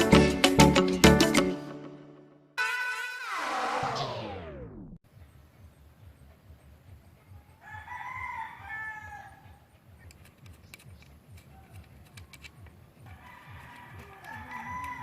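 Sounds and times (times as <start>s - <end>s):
rooster crowing: 7.5s - 9.6s, 13.0s - 15.0s.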